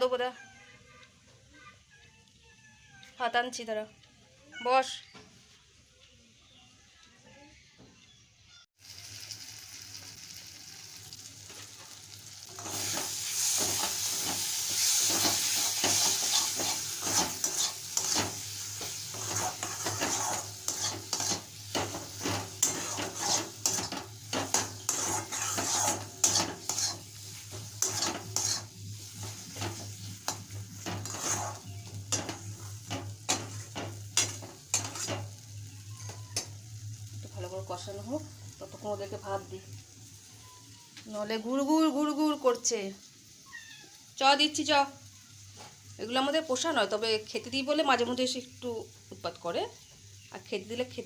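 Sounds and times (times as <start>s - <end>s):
masala sizzling in hot oil: 8.8s - 51.0s
spatula scraping a pan: 12.5s - 36.5s.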